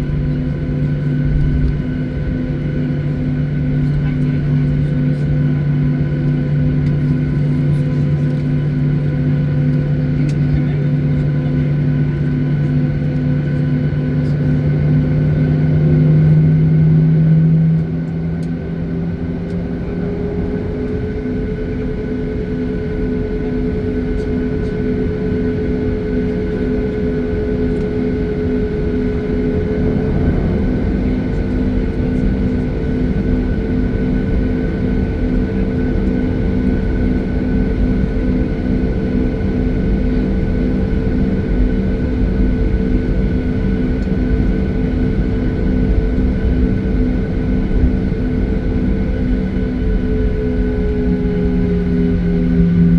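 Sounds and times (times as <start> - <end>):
airliner cabin engine noise: 0.0 - 52.9
rising higher tone: 28.7 - 33.8.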